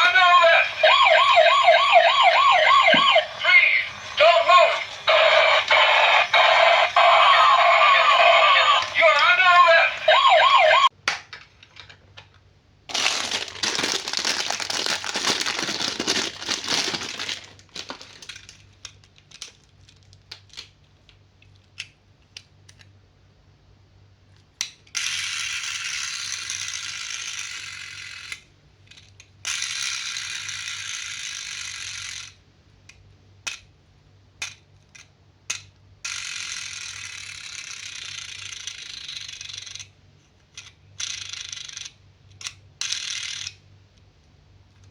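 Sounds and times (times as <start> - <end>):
packaging rustling: 12.9 - 18.6
toys rattling and clicking: 12.9 - 22.9, 34.4 - 43.6.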